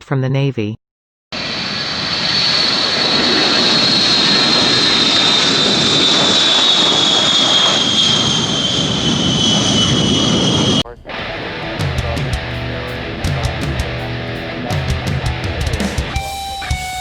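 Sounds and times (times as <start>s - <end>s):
turbine aircraft engines whining: 1.3s - 17.0s.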